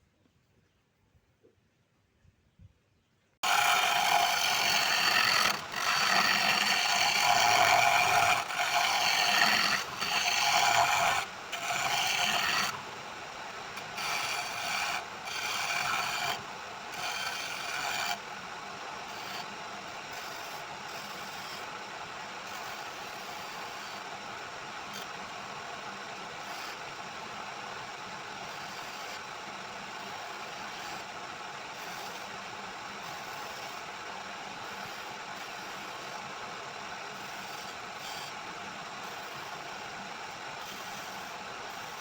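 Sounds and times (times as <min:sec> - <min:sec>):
tool rasping wood: 0:03.4 - 0:18.4, 0:19.0 - 0:21.6.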